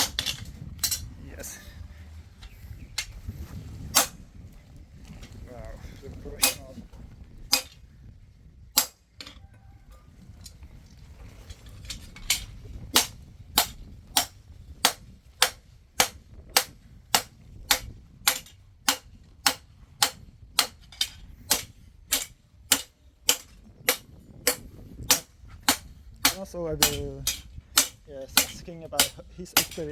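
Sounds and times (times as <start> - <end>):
hammer striking steel on anvil: 6.4 - 6.6, 8.8 - 9.1, 13.0 - 29.9.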